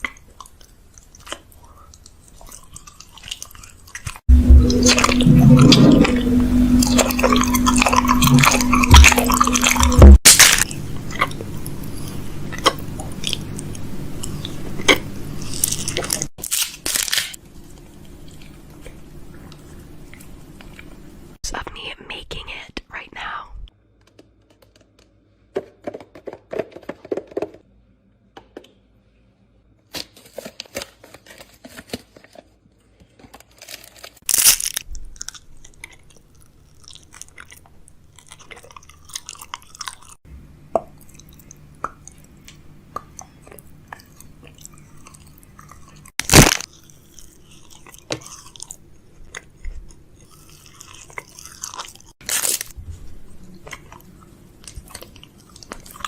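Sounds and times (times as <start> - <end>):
chewing and crunching food: 0.0 - 4.2, 10.3 - 21.2, 30.2 - 56.0
loud sharp crunches: 10.2 - 10.7, 33.7 - 35.4, 46.2 - 46.8, 52.2 - 52.8.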